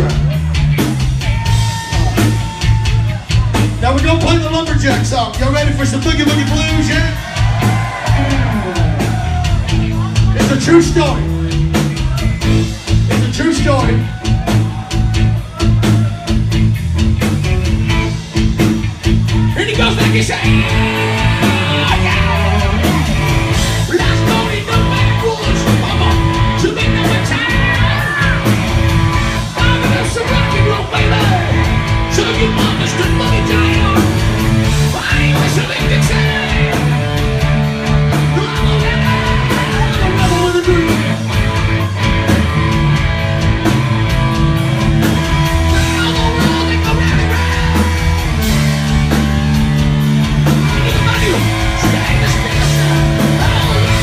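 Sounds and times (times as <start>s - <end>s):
distorted electric guitar: 0.0s - 54.0s
live rock band playing: 0.0s - 54.0s
person singing: 19.7s - 23.1s, 34.9s - 37.0s, 38.2s - 41.0s, 50.6s - 54.0s.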